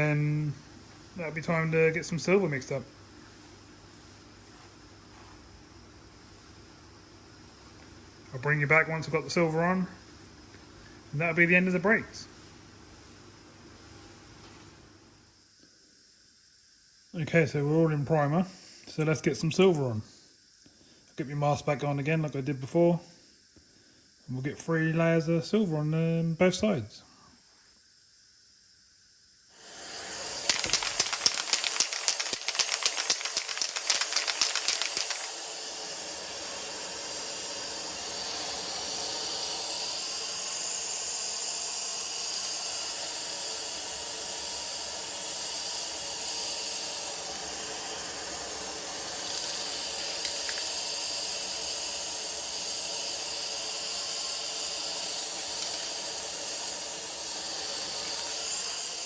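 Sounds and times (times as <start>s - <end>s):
spray paint hissing: 29.5s - 59.0s
rapid rattling: 30.4s - 35.4s.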